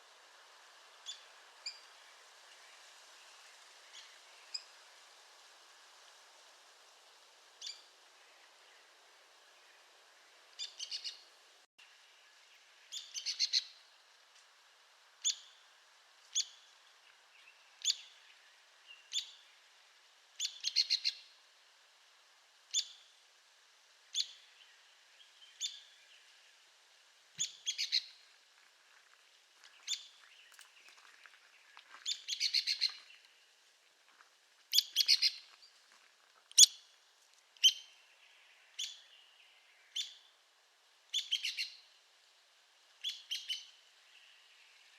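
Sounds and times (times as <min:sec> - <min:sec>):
woodpecker calling: 0:12.9 - 0:13.7, 0:27.4 - 0:28.1, 0:32.0 - 0:33.0, 0:34.7 - 0:35.5, 0:41.1 - 0:41.8.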